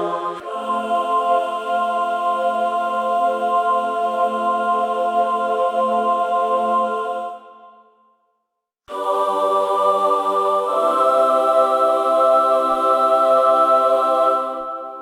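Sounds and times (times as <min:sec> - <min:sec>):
ethereal choir chord: 0:00.0 - 0:07.9, 0:08.9 - 0:15.0.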